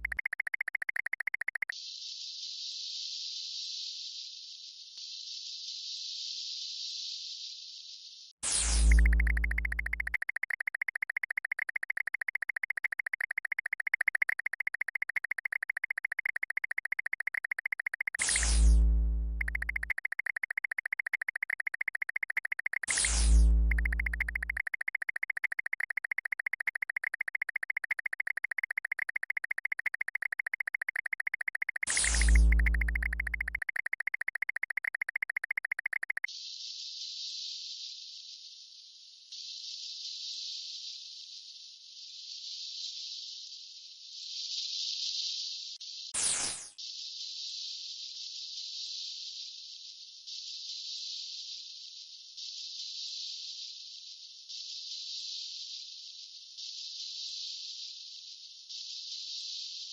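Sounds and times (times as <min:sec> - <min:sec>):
electronic buzzing tone: 0:00.0 - 0:01.7, 0:08.8 - 0:36.3.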